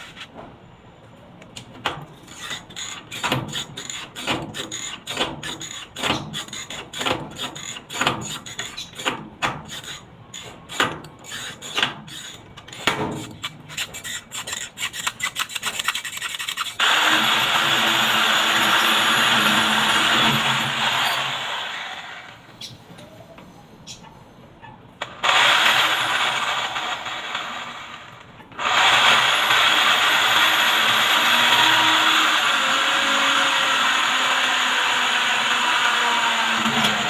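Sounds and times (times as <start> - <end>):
hand sanding rasping strokes: 2.3 - 19.6.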